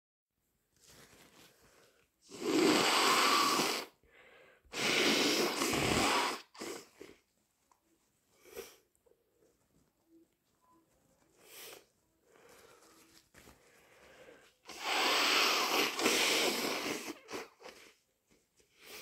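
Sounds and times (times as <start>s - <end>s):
person blowing nose: 2.2s - 7.2s, 11.4s - 13.1s, 13.7s - 18.0s, 18.7s - 19.0s
person sniffing: 2.2s - 7.2s, 11.4s - 13.1s, 13.7s - 18.0s, 18.7s - 19.0s.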